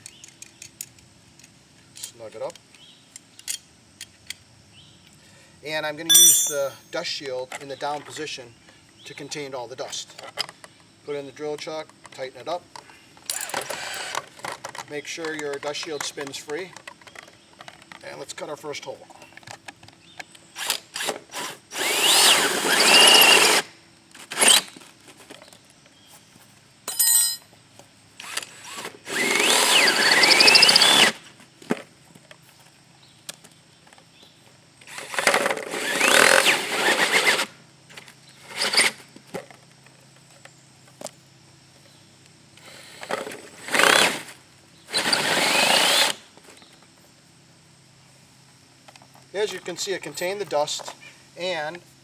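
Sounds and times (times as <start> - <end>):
power drill whining: 13.3 - 14.3, 20.6 - 23.7, 24.3 - 24.7, 28.2 - 31.2, 34.9 - 37.5, 38.4 - 39.0, 42.6 - 46.2.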